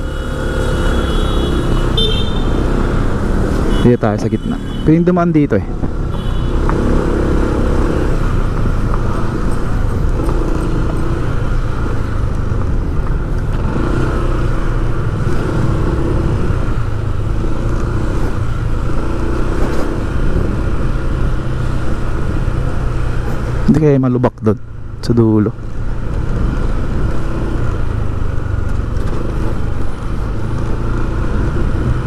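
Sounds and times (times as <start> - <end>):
vehicle engine running: 0.0 - 4.0
road noise: 0.0 - 32.0.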